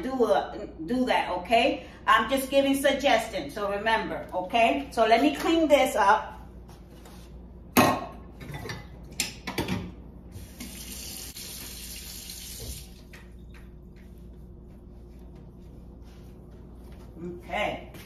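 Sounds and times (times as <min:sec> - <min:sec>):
kitchen tap running: 0:10.3 - 0:13.1.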